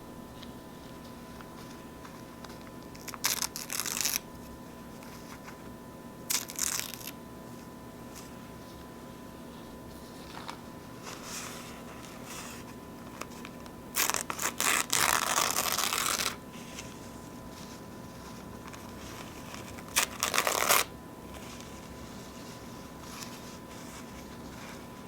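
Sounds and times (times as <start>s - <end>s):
paper napkin tearing: 2.9s - 4.3s, 6.3s - 7.2s, 9.7s - 17.0s, 17.6s - 25.0s.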